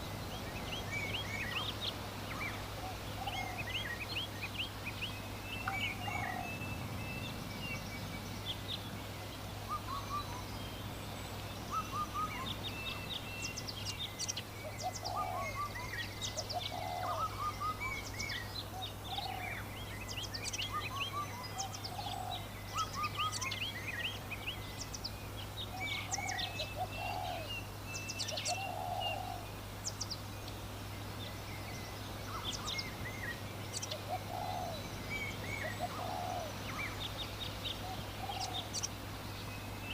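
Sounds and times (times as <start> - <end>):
low bird call: 0.0 - 11.0, 11.6 - 30.6
small birds chirping: 0.0 - 39.9.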